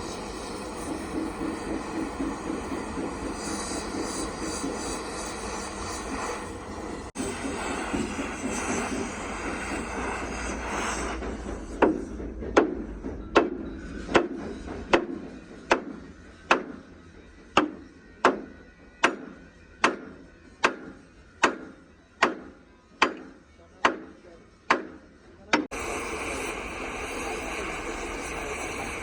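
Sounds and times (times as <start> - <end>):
engine running: 0.0 - 15.0, 25.7 - 29.0.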